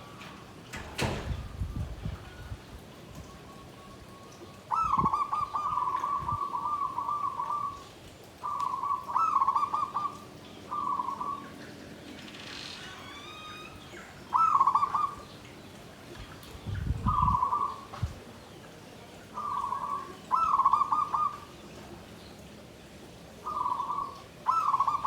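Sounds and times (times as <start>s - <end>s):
dove cooing: 3.6s - 11.6s, 14.2s - 15.3s, 17.0s - 18.1s, 19.2s - 21.7s, 23.4s - 25.0s.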